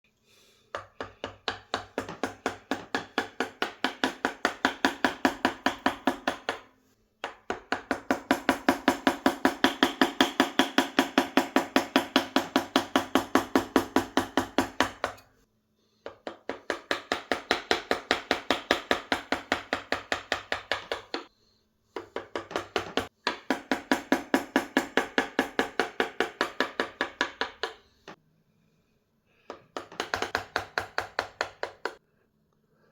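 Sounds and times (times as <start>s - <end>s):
chisel tapped through wood: 0.7s - 6.6s, 22.0s - 28.2s, 29.4s - 32.0s.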